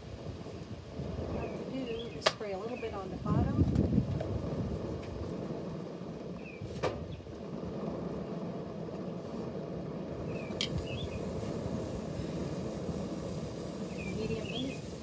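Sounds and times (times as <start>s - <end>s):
wind rumble on microphone: 0.0s - 15.0s
bird chirps: 10.3s - 11.3s, 13.8s - 14.9s.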